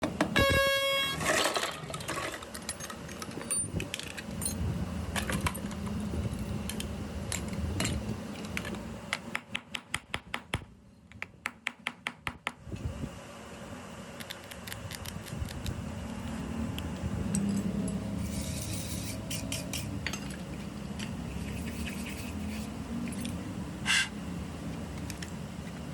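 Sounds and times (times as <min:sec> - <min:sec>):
car horn honking: 0:00.4 - 0:01.3.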